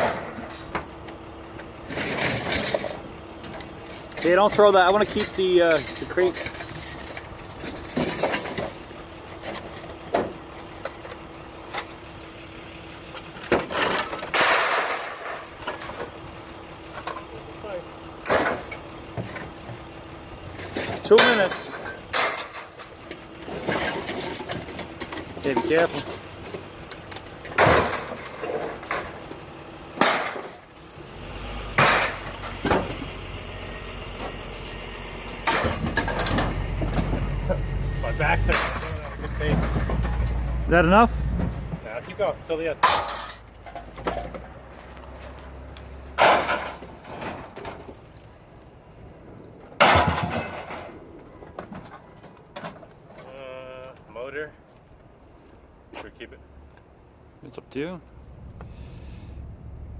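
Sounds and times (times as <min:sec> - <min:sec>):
scrap metal clanking: 0:01.8 - 0:10.3, 0:20.5 - 0:29.4, 0:31.8 - 0:33.2, 0:35.2 - 0:45.4, 0:46.2 - 0:48.0
scrap metal clatter: 0:01.8 - 0:11.9, 0:13.2 - 0:16.2, 0:20.5 - 0:31.0, 0:31.8 - 0:33.2, 0:35.3 - 0:45.5, 0:46.2 - 0:48.4, 0:49.8 - 0:53.4
low engine hum: 0:15.3 - 0:49.6, 0:58.0 - 0:59.9
steady low hum: 0:31.7 - 0:43.9.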